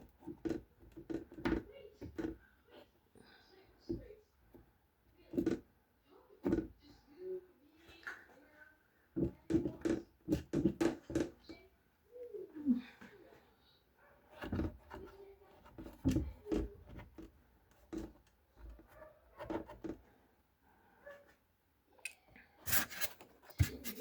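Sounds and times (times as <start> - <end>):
hand scrubbing and rubbing: 22.7 - 24.0.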